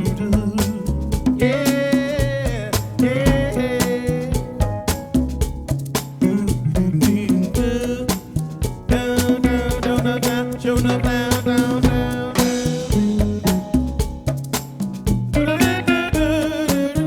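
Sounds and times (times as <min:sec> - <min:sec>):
drum beat: 0:00.0 - 0:17.0
lead melody line: 0:15.4 - 0:17.0.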